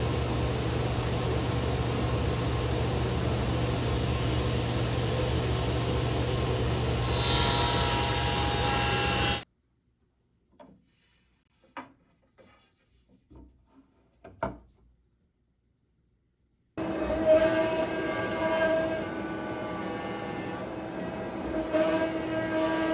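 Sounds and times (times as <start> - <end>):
router bit cutting wood: 6.9 - 9.4.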